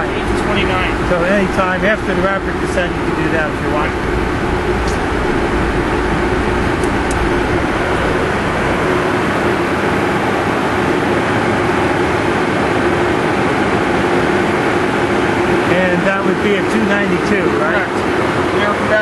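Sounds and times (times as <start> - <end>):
deep rumble: 0.0 - 11.9
jet engine hum: 0.0 - 19.0
rushing airflow: 0.0 - 19.0
steady whine: 0.0 - 19.0.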